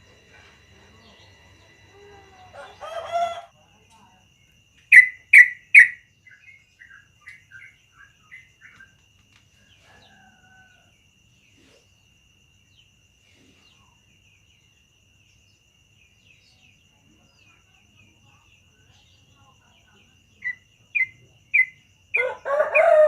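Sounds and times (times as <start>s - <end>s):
faint steady high tone: 0.0s - 8.4s
bird singing: 0.0s - 23.0s.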